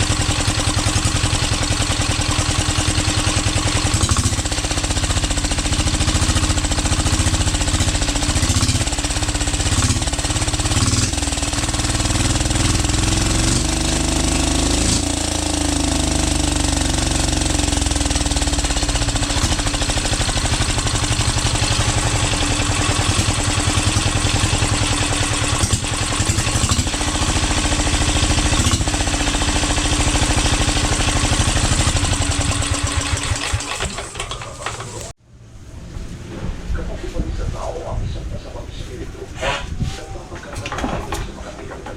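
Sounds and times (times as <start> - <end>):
diesel engine knocking: 0.0 - 35.1, 40.5 - 41.9.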